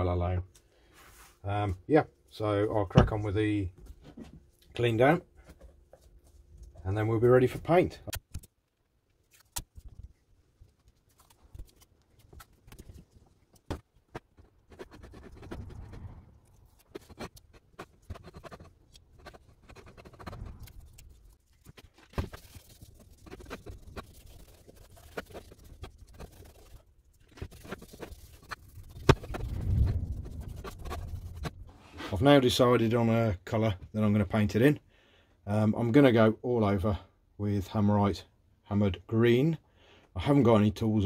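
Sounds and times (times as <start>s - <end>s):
metal scratching and scraping: 14.7s - 32.2s.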